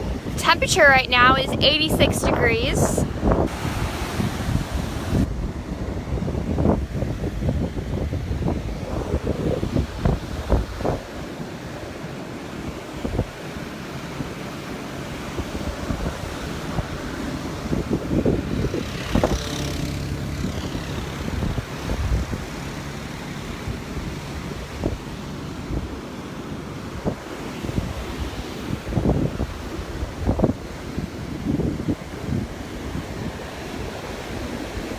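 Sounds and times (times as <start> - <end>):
surf breaking on beach: 0.0 - 34.9
wind buffeting microphone: 0.0 - 34.9
engine hum passing by: 2.7 - 29.4.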